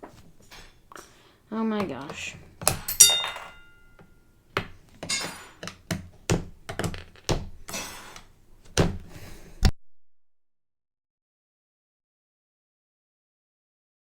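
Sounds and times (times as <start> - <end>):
short ringing clink: 2.9 - 4.0.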